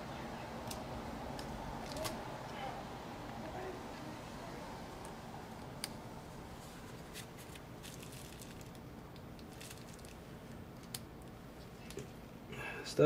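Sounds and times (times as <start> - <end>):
low steady hum: 0.0 - 13.0
small clicks and handling noise: 0.6 - 2.2, 7.1 - 12.2.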